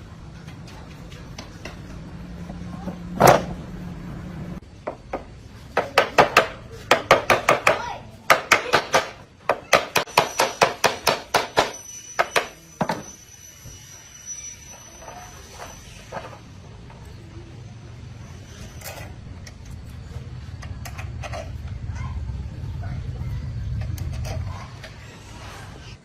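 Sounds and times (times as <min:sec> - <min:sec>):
steady low hum: 0:16.4 - 0:26.0.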